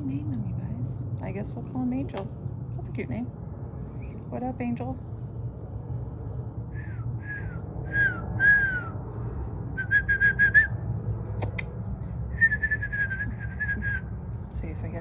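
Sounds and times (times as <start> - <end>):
steady low rumble: 0.0 - 15.0
person whistling notes: 9.8 - 10.7
sharp clicks: 11.4 - 11.7.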